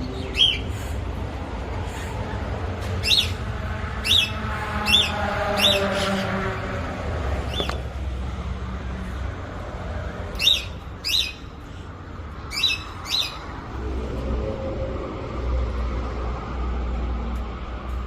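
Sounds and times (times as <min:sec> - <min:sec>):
bird calls: 0:03.0 - 0:06.3, 0:10.4 - 0:11.8, 0:12.5 - 0:13.5.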